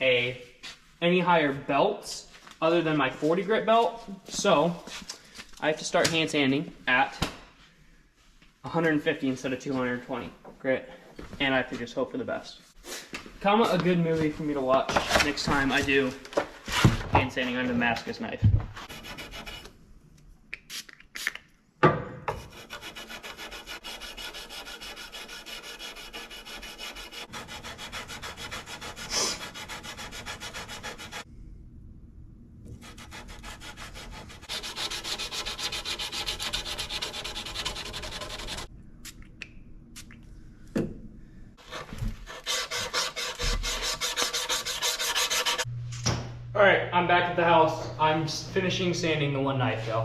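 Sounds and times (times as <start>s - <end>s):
sandpaper rubbing on steel blade: 18.8s - 19.7s, 22.4s - 31.2s, 32.8s - 38.7s, 41.6s - 45.7s.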